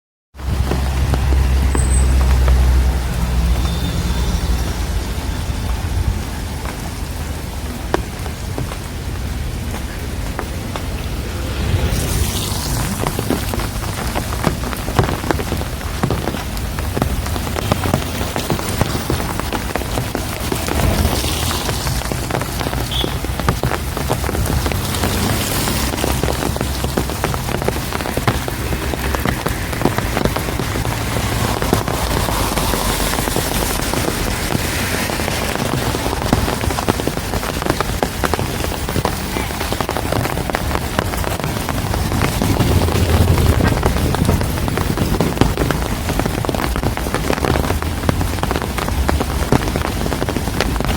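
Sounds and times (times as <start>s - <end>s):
raindrops striking: 0.3s - 50.9s
low rumble: 10.7s - 14.4s, 20.2s - 25.2s, 41.7s - 45.6s.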